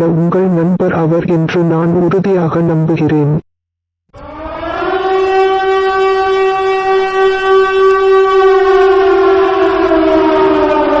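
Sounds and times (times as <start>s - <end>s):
wailing siren: 4.1s - 11.0s.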